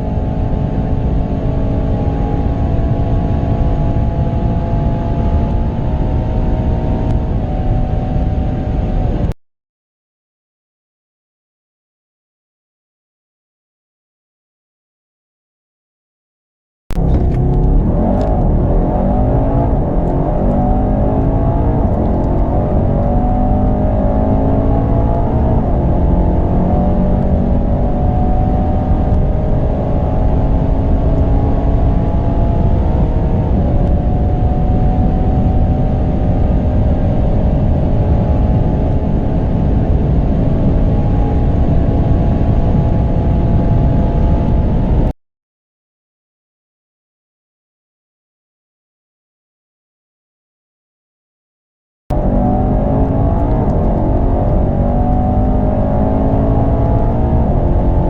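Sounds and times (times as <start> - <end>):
car engine accelerating hard: 0.0 - 9.4, 16.9 - 45.1, 52.1 - 58.0.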